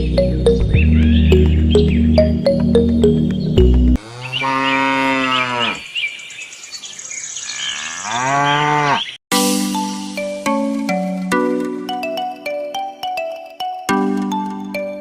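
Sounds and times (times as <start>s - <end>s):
background music: 0.0s - 4.0s, 9.3s - 15.0s
cow mooing: 4.0s - 5.8s, 7.5s - 9.1s.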